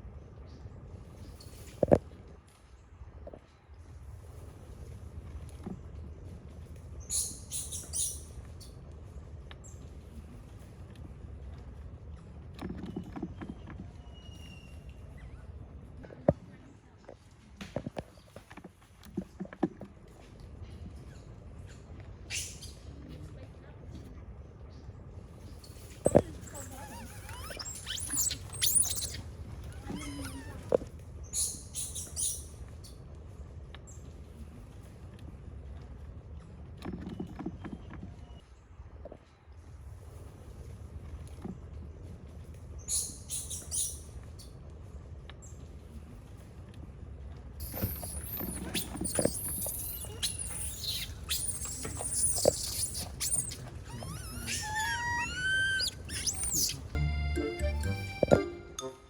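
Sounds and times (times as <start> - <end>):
monkey squealing: 25.8 - 30.7, 47.6 - 57.0.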